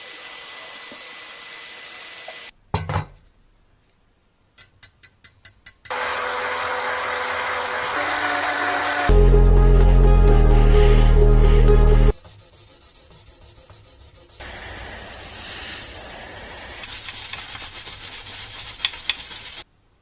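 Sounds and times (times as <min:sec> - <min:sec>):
rhythmic sanding strokes: 0:05.9 - 0:15.1, 0:16.8 - 0:19.6
background music: 0:08.0 - 0:12.2
spray hiss: 0:14.4 - 0:19.6.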